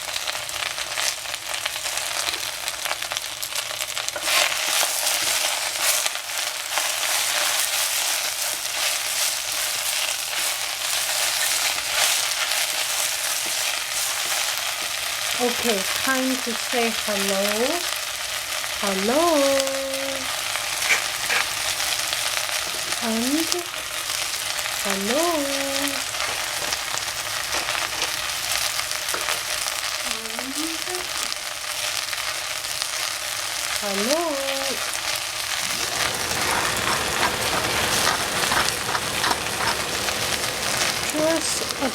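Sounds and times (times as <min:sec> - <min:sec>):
vegetables frying in oil: 0:00.0 - 0:41.9
stirring scrapes in a pan: 0:04.2 - 0:15.3, 0:20.6 - 0:23.0, 0:35.4 - 0:41.9.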